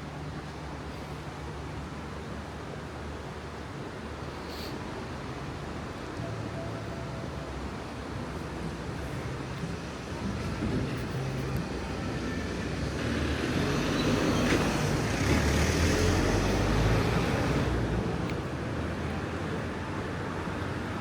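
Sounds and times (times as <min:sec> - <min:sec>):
vehicle driving past: 0:11.3 - 0:18.0.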